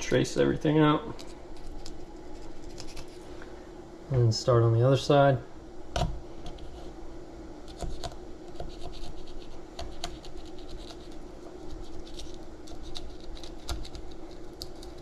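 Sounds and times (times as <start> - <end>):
knife scratching along fish bone: 1.2 - 3.2, 7.6 - 15.0.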